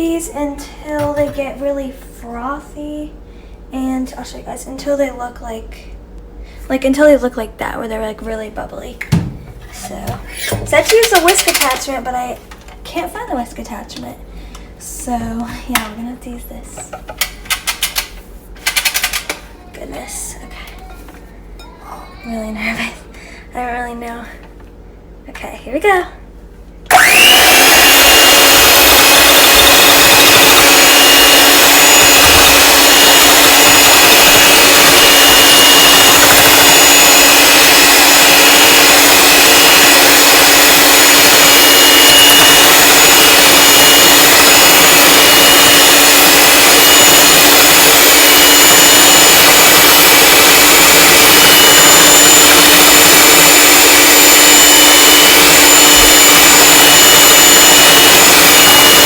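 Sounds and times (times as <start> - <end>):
electric hand mixer whine: 26.9 - 59.0.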